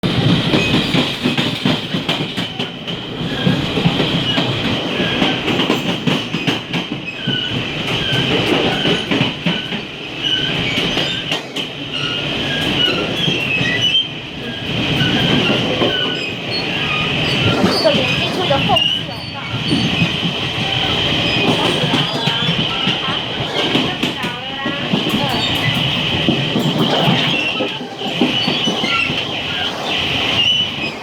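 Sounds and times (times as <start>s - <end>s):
train rumble and rattle: 0.0s - 31.0s
high squeal: 27.1s - 31.0s.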